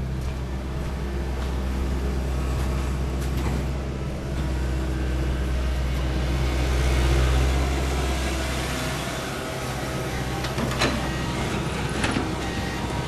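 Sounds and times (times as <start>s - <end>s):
engine humming: 0.0s - 13.0s.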